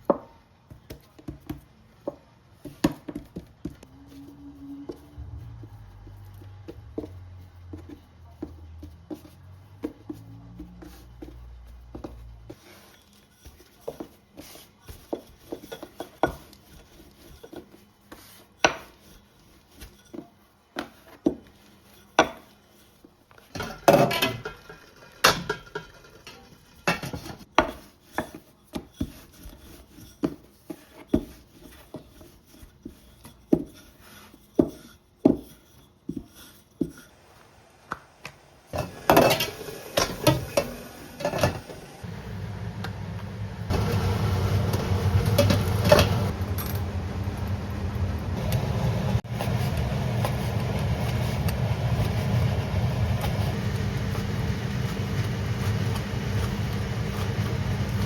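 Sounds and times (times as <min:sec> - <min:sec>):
low hum: 0:03.9 - 0:07.3, 0:42.1 - 0:58.0.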